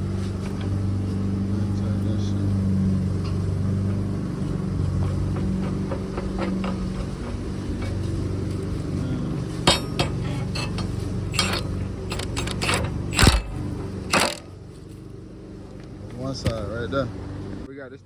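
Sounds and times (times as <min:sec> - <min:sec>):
engine running: 0:00.0 - 0:18.0
metal parts clinking and knocking: 0:03.1 - 0:08.9, 0:09.5 - 0:14.6.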